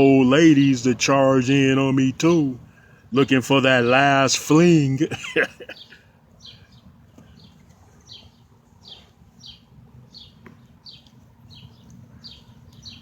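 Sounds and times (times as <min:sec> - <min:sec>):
small bird chirping: 0:05.7 - 0:13.0.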